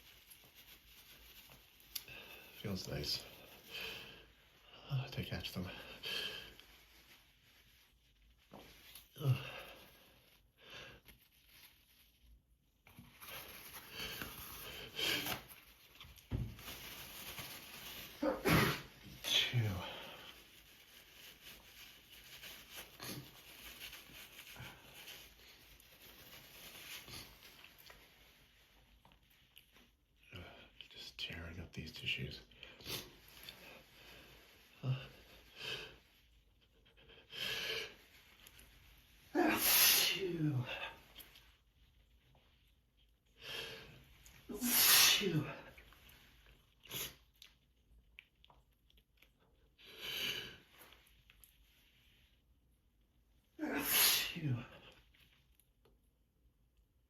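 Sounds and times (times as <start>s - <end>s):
person sniffling: 18.2s - 20.4s, 39.3s - 41.0s, 53.6s - 54.9s.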